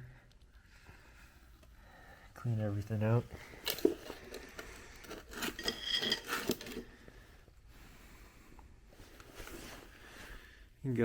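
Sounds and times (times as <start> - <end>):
metal parts clinking and scraping: 3.6 - 6.8.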